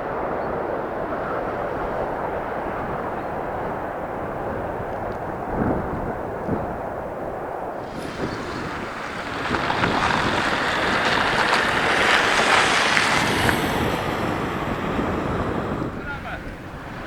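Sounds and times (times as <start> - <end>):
wind buffeting microphone: 0.0 - 17.0
aircraft engine passing: 7.8 - 17.0.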